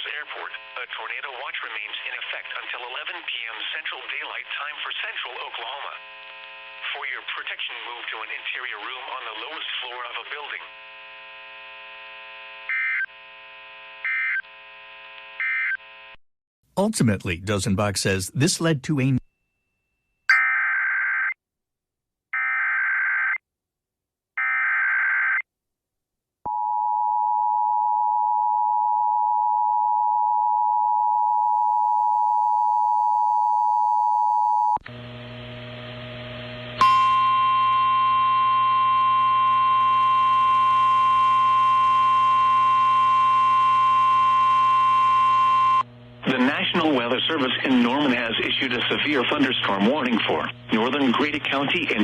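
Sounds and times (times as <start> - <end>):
noisy hum: 0.1 - 16.2, 34.8 - 52.0
steady alarm tone: 36.8 - 45.8.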